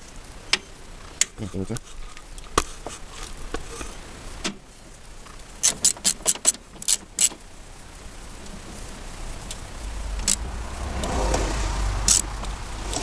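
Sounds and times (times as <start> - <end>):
hand tools clacking: 0.5 - 4.7
sharp clicks: 10.2 - 11.2.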